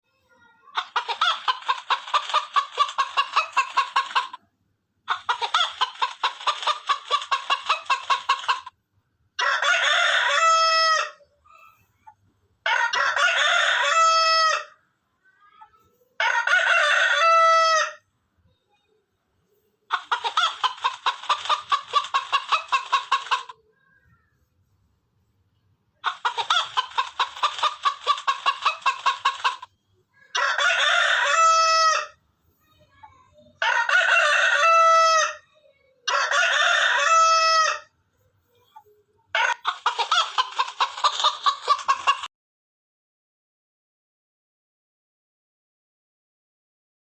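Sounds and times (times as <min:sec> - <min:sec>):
chickens clucking: 0:00.6 - 0:04.5, 0:05.1 - 0:08.8, 0:15.7 - 0:24.5, 0:25.5 - 0:42.3
rooster crowing: 0:09.4 - 0:11.2, 0:12.7 - 0:14.7, 0:16.2 - 0:18.0, 0:30.3 - 0:32.2, 0:33.6 - 0:35.4, 0:36.1 - 0:37.9.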